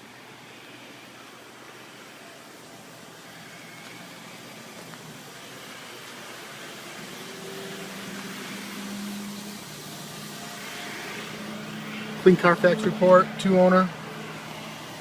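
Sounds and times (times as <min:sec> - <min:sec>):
low engine hum: 0:00.0 - 0:15.0
vehicle rushing noise: 0:04.2 - 0:15.0.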